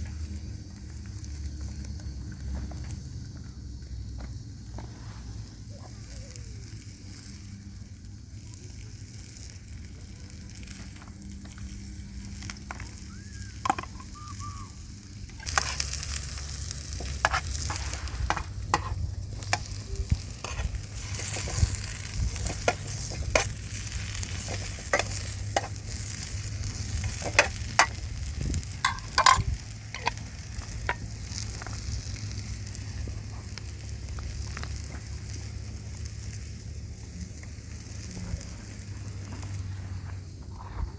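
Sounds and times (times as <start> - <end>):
sizzling hiss: 0.0 - 40.9
clicks and crackles: 8.4 - 39.6.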